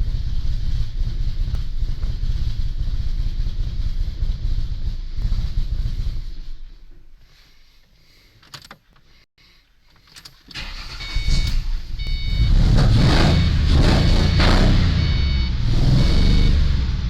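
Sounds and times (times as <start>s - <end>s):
car engine running roughly: 0.0s - 6.8s
engine backfiring: 0.0s - 6.9s, 10.6s - 17.0s.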